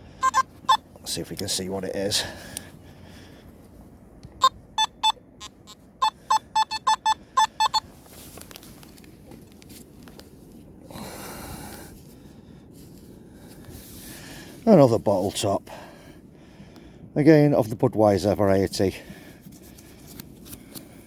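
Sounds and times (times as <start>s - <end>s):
metal detector beeps: 0.2s - 0.8s, 4.4s - 7.8s
rustle: 7.8s - 15.5s, 19.1s - 21.0s.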